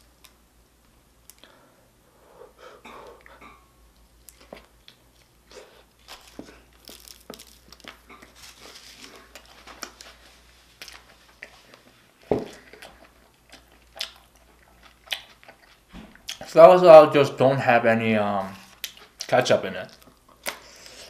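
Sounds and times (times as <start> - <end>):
paper wrapper crinkling and tearing: 6.1 - 11.1
biting and chewing: 10.8 - 16.5.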